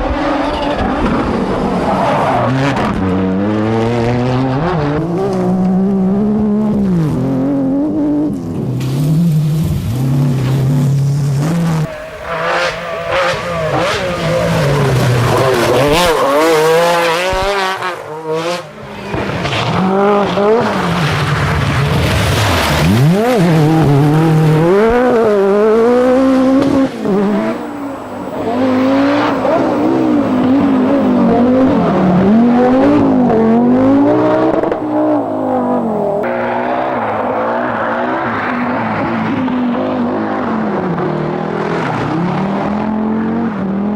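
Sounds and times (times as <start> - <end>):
rally car engines revving: 0.0 - 43.9
tyres skidding on loose surface: 8.8 - 25.4.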